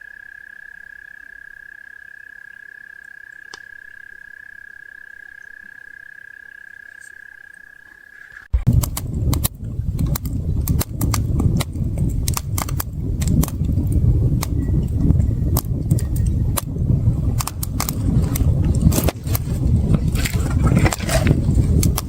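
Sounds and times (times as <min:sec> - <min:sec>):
campfire crackling and popping: 0:08.5 - 0:22.0
low rumble: 0:08.5 - 0:22.0.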